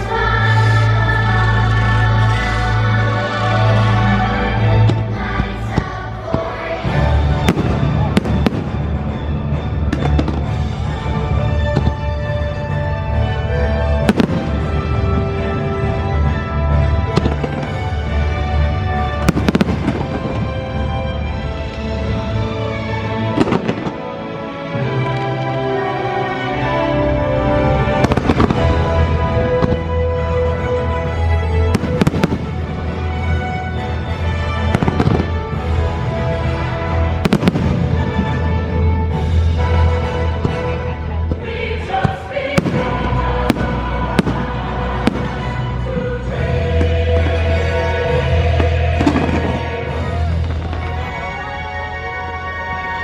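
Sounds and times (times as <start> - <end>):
loud show music: 0.0 - 53.0
fireworks bangs: 5.8 - 9.2, 14.0 - 16.4, 19.2 - 20.8, 28.0 - 29.9, 31.7 - 33.3, 37.2 - 38.5, 42.0 - 45.8, 48.6 - 51.3.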